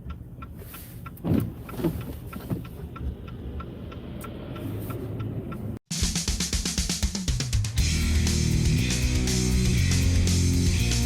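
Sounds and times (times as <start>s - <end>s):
car road noise rumble: 0.0s - 5.8s
regular light ticking: 0.0s - 5.8s.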